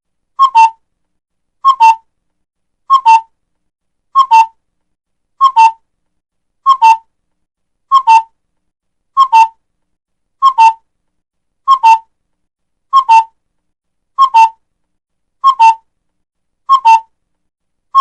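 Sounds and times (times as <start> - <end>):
bird two-note whistled call: 4.2 - 4.5, 7.9 - 8.3, 11.7 - 12.0, 15.4 - 15.8.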